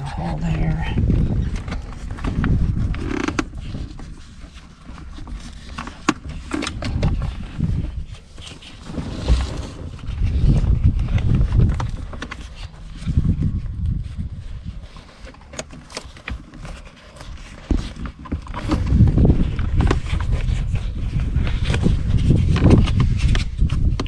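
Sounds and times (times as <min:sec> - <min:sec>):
rustling and bumping: 0:05.3 - 0:12.7.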